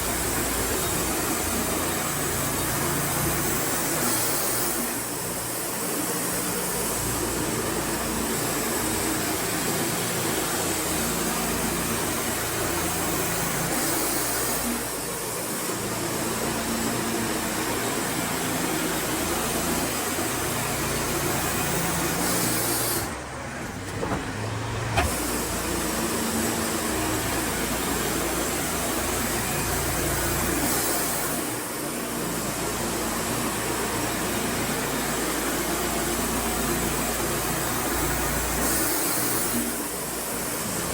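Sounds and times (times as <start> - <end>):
band sawmill sawing boards: 19.8 - 29.5.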